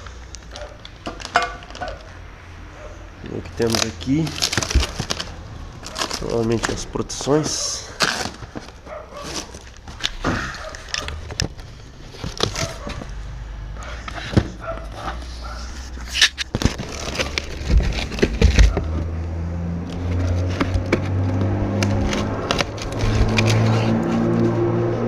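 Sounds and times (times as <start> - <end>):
packaging rustling: 3.3 - 13.3, 14.0 - 19.2, 21.8 - 24.2.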